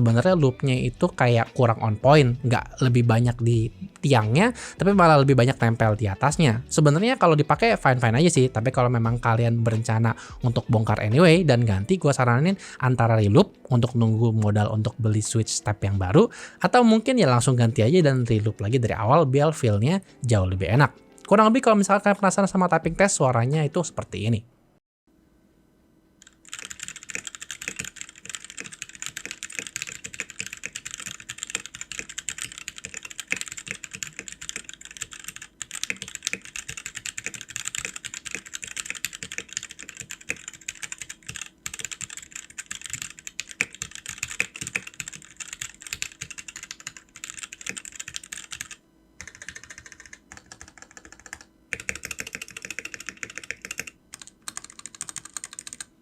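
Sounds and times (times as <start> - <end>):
mechanical keyboard keystroke clicks: 26.2 - 55.9.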